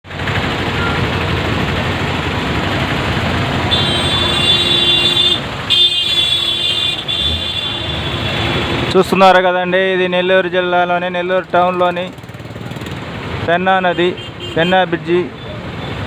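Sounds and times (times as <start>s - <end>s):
road traffic rushing: 0.0s - 16.0s
floodwater rushing: 0.1s - 9.4s
vehicle horn: 3.6s - 8.6s, 13.9s - 14.8s.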